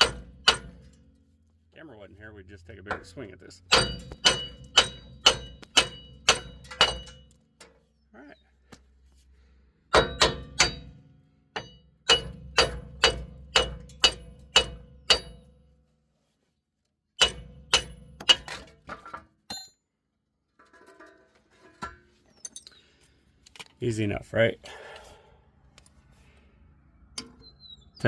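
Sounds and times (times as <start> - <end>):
hammer striking metal hub: 0.0 - 1.2, 2.8 - 7.8, 9.9 - 15.5, 17.2 - 19.8.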